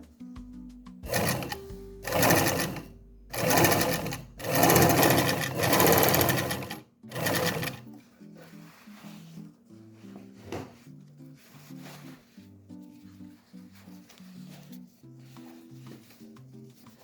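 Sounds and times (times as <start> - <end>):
soft background music: 0.0 - 17.0
small motorised machine chattering: 1.1 - 7.8.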